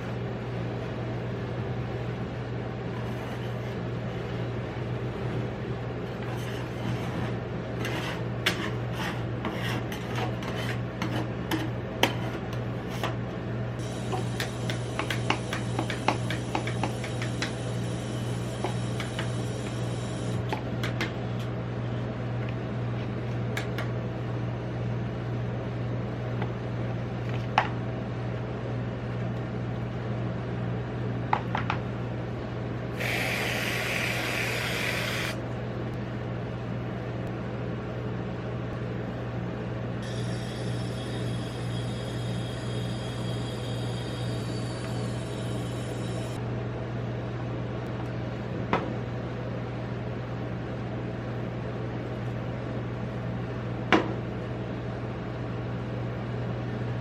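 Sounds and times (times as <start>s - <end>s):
refrigeration unit humming: 0.0s - 57.0s
hiss: 33.0s - 35.4s.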